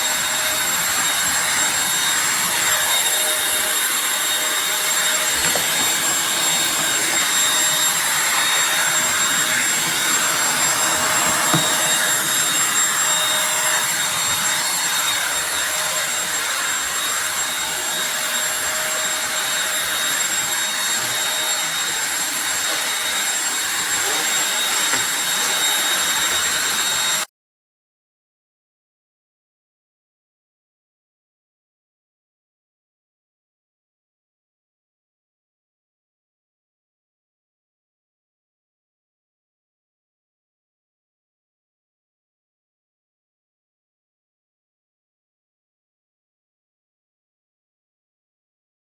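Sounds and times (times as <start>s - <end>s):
stick vacuum running: 0.0s - 27.3s.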